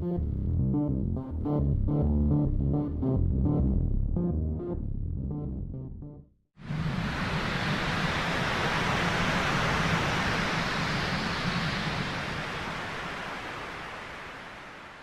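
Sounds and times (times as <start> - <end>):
synthesizer noise hiss: 6.7 - 15.0.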